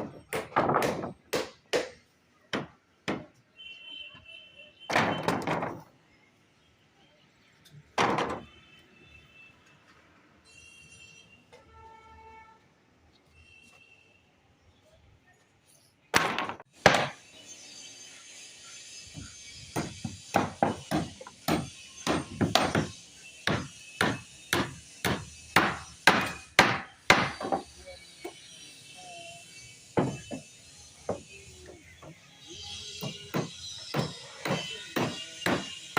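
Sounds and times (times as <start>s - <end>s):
hammer strikes: 0.0s - 3.4s, 16.2s - 17.2s, 19.1s - 28.4s, 29.9s - 32.2s, 32.9s - 35.9s.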